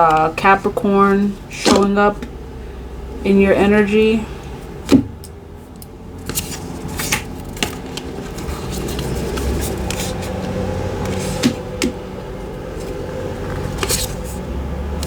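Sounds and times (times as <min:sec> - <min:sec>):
steady low hum: 0:00.0 - 0:15.0
cards clicking and scraping: 0:06.2 - 0:12.0, 0:12.8 - 0:14.4.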